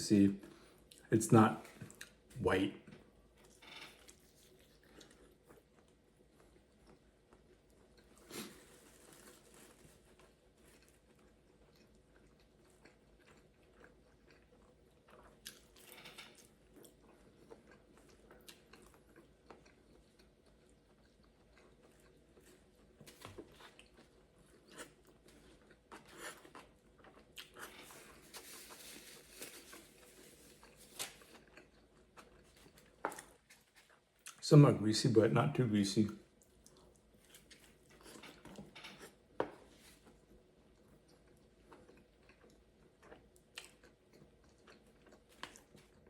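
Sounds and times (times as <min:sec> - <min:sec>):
mouth chewing sounds: 0:16.4 - 0:34.4, 0:40.7 - 0:46.0.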